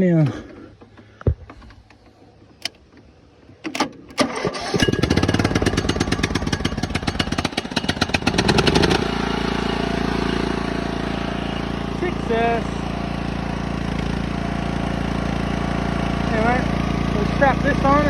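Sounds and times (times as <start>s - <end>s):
mower engine cranking and running: 0.3s - 18.0s.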